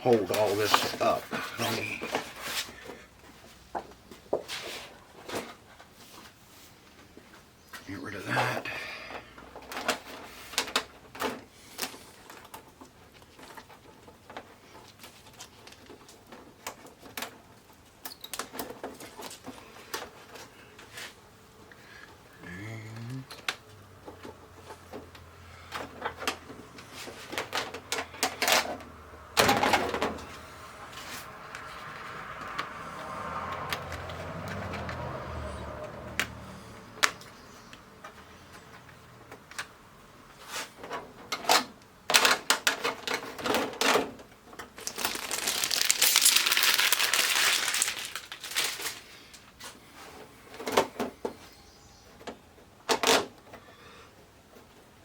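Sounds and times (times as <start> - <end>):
rustling: 0.0 - 7.8, 23.4 - 35.0, 40.3 - 51.0.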